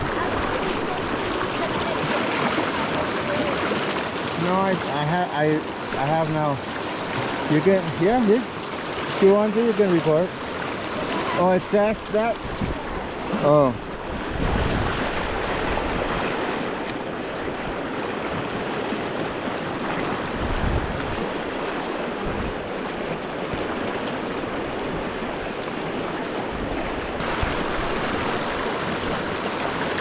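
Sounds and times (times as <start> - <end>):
river water flowing: 0.0 - 30.0.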